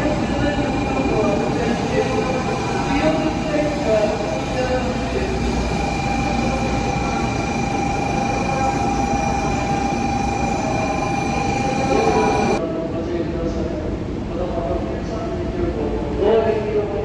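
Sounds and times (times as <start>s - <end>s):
constant high whine: 0.0s - 12.6s
train rumbling: 0.0s - 12.6s.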